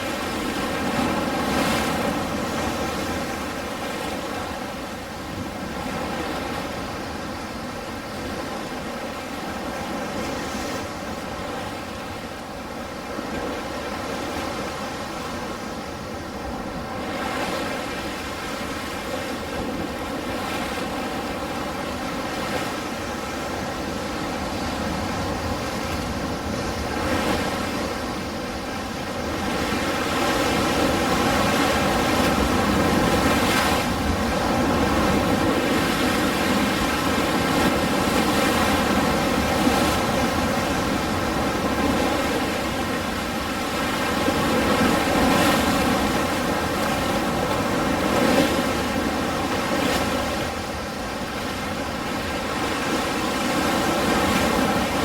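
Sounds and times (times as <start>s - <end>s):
ocean surf washing: 0.0s - 55.0s.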